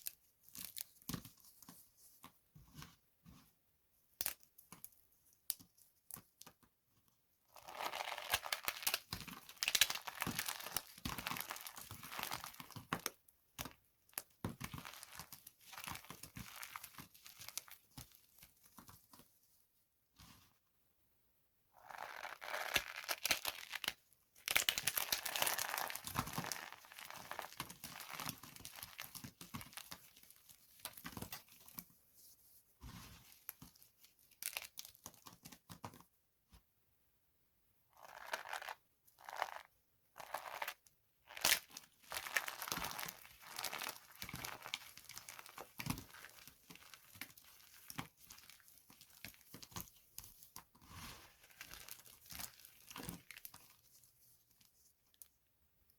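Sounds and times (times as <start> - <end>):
dry soap crushed crackling: 7.6 - 18.5, 21.8 - 31.8, 32.9 - 35.6, 38.0 - 55.3.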